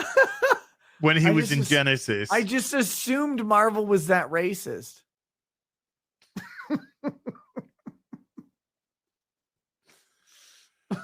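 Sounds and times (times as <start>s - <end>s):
man laughing: 0.0s - 1.9s, 6.4s - 8.5s
faint intake of breath: 9.9s - 10.8s.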